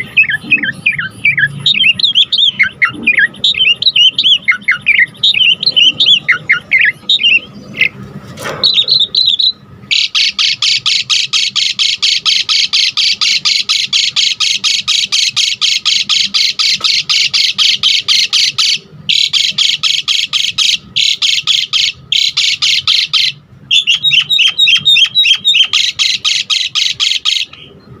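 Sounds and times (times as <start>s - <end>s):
starling singing: 0.0s - 28.0s.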